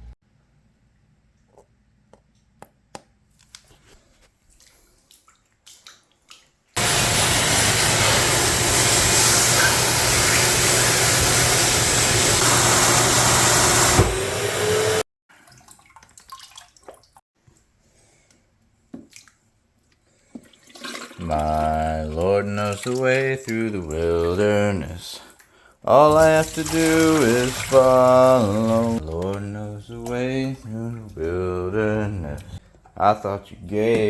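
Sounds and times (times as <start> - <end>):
shop vac running: 6.8 - 15.0, 26.2 - 29.0.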